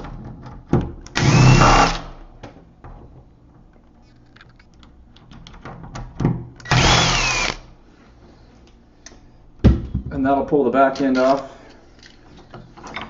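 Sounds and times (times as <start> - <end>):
cordless drill whirring: 1.2 - 2.1, 6.6 - 7.7.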